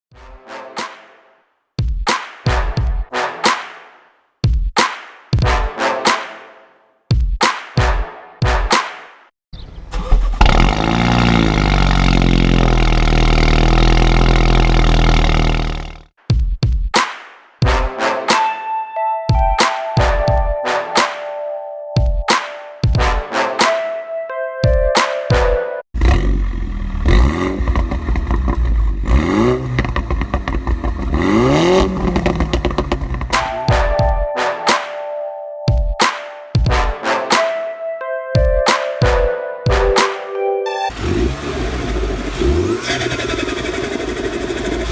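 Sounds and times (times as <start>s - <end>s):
car engine starting and idling: 10.4s - 16.0s, 26.0s - 33.4s, 40.9s - 44.9s
exhaust crackles: 10.4s - 16.1s, 26.0s - 33.5s, 40.9s - 44.9s.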